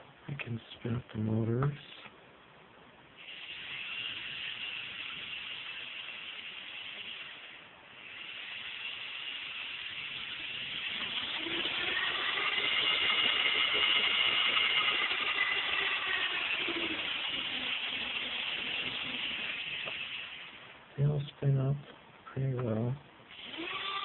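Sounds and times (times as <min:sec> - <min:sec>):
drone motors whining: 0:03.2 - 0:20.6, 0:23.3 - 0:24.0.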